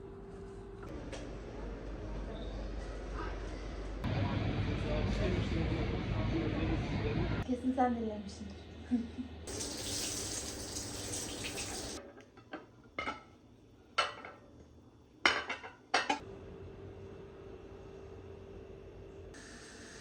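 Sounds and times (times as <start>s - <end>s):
tap water running: 9.5s - 12.0s
dishes and cutlery clinking: 15.3s - 16.2s.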